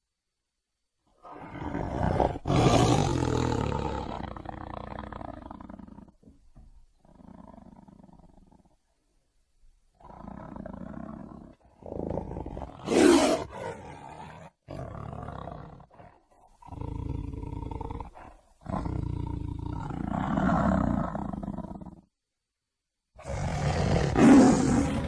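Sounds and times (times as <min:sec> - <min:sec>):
tiger roaring and growling: 0:01.2 - 0:06.2, 0:10.0 - 0:22.0, 0:23.2 - 0:25.0.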